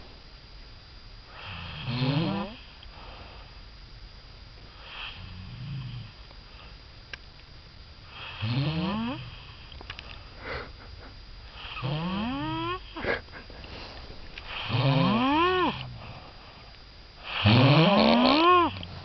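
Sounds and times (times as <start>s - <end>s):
man snoring: 1.3s - 2.7s, 4.8s - 6.2s, 8.1s - 9.6s, 11.5s - 13.0s, 14.5s - 16.0s, 17.2s - 19.0s
quiet breath: 2.6s - 3.8s, 4.6s - 7.0s, 9.2s - 11.8s, 12.8s - 14.8s, 15.8s - 17.5s.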